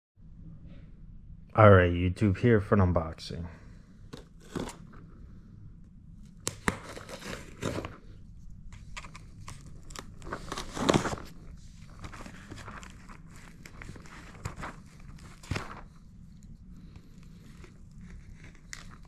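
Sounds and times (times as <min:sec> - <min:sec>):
packaging tearing and crinkling: 0:04.2 - 0:05.0, 0:06.3 - 0:08.0, 0:08.8 - 0:15.9, 0:17.4 - 0:19.0.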